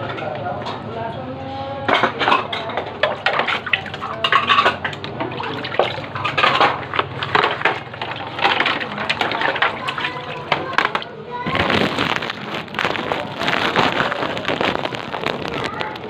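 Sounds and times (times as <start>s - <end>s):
dishes and cutlery clattering: 1.8s - 11.1s
water running: 3.0s - 15.9s.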